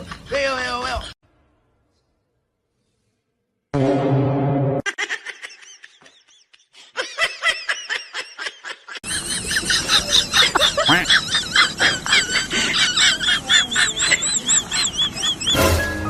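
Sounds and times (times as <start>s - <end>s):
birds chirping: 9.1s - 15.8s.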